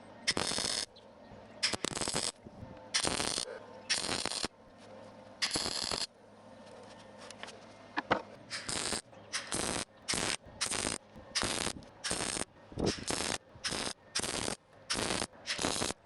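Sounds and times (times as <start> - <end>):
spot welds crackling: 0.3 - 0.9, 1.6 - 4.6, 5.4 - 6.1, 8.5 - 16.0.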